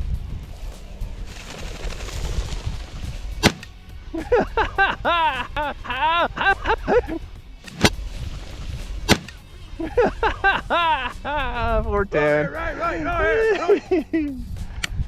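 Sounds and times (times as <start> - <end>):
wind noise: 0.0 - 15.0
shotgun shot: 1.3 - 4.7, 6.5 - 9.4
pheasant cackling calls: 1.4 - 14.4.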